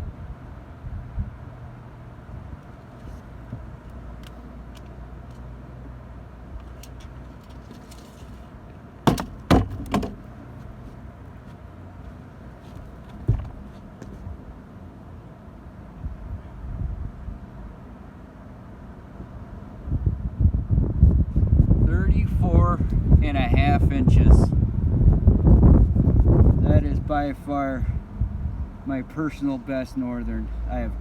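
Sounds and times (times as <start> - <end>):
knocks and clatters of gear: 6.6 - 10.4.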